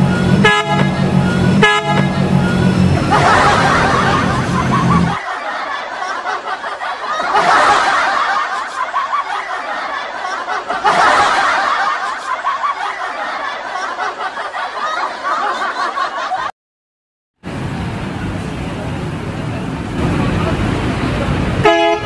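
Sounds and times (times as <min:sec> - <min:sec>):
laughter: 0:03.0 - 0:16.5.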